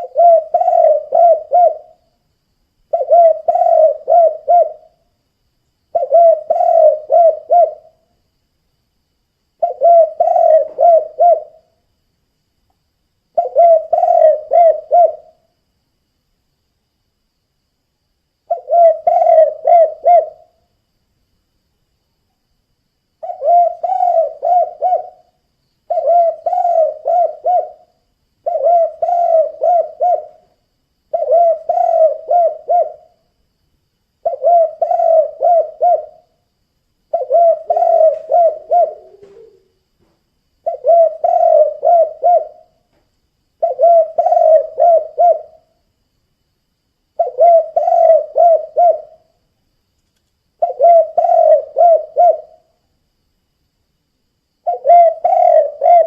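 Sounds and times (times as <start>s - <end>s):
dove cooing: 0.0s - 2.1s, 2.9s - 5.0s, 5.9s - 8.0s, 9.6s - 11.8s, 13.4s - 15.5s, 18.5s - 20.6s, 23.2s - 30.5s, 31.1s - 33.2s, 34.2s - 36.3s, 37.1s - 39.8s, 40.6s - 42.8s, 43.6s - 45.7s, 47.2s - 49.3s, 50.6s - 52.8s, 54.6s - 56.0s.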